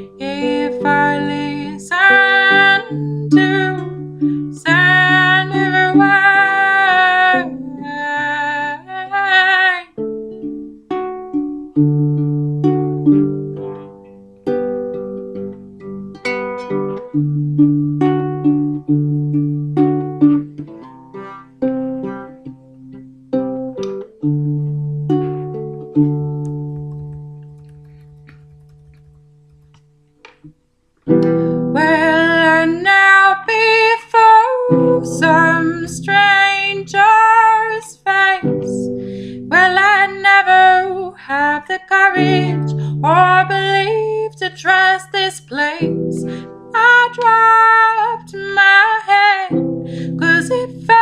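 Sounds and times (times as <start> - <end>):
person singing: 0.0 - 10.0, 31.1 - 51.0
plucked strings: 0.0 - 51.0
guitar chord ringing: 10.0 - 33.5.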